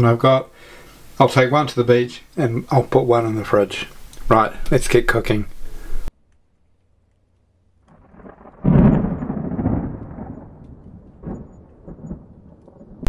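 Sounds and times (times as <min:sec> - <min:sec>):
thunder boom rumbling: 0:07.9 - 0:13.0.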